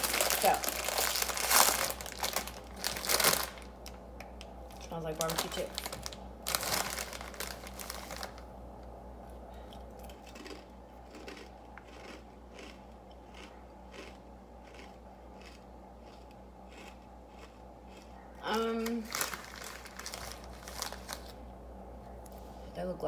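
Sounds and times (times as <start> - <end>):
corn chips being chewed: 0.0 - 8.4, 9.3 - 21.5
plastic chip bag crinkling: 0.0 - 8.5, 18.5 - 21.5.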